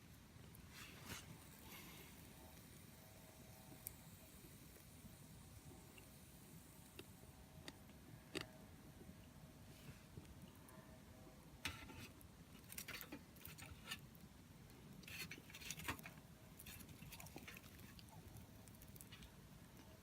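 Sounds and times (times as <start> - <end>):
wood fire crackling: 0.0 - 10.8, 11.4 - 20.0
burning wood snapping and popping: 11.6 - 19.4.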